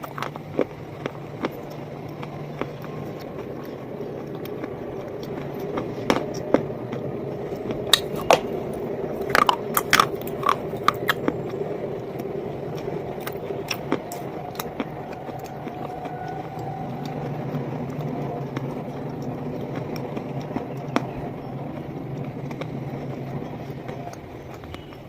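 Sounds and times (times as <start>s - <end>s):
crunching of brittle bars: 0.0s - 11.6s, 12.7s - 16.7s
low background hum: 0.0s - 25.0s.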